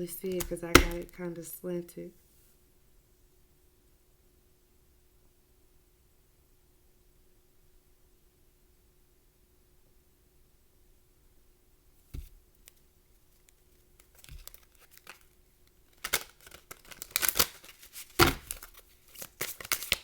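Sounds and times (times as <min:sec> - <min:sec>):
cards rustling: 0:00.1 - 0:01.1, 0:14.0 - 0:15.2, 0:15.9 - 0:20.0.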